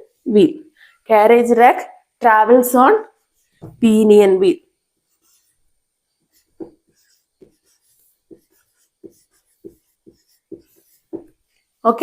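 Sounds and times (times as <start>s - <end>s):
pen writing strokes: 5.1s - 11.7s.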